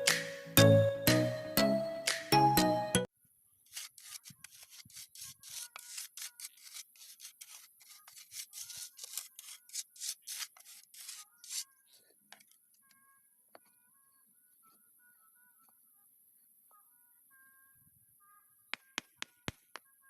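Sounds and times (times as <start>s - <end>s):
hand tool scraping gritty ground: 3.7s - 12.6s.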